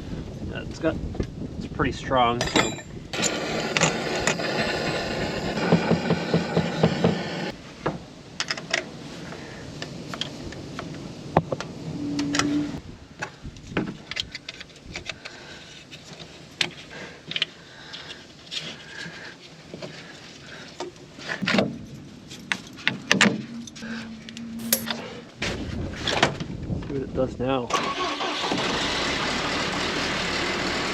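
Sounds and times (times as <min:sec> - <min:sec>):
metal tools clinking: 0:02.4 - 0:03.3, 0:24.6 - 0:25.1.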